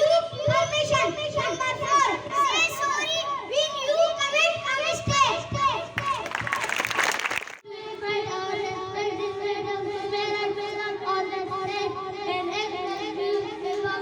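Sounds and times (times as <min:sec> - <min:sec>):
children singing together: 0:07.7 - 0:14.0.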